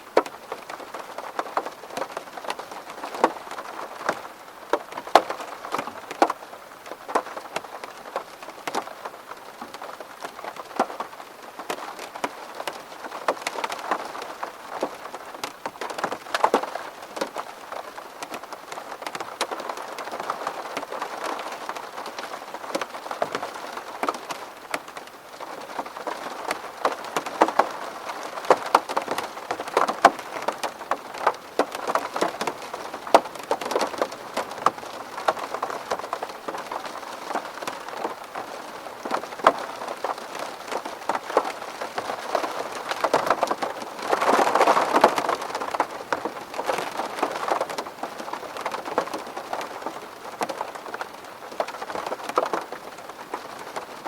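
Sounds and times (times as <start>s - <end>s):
rain drops on window glass: 0.0s - 54.0s.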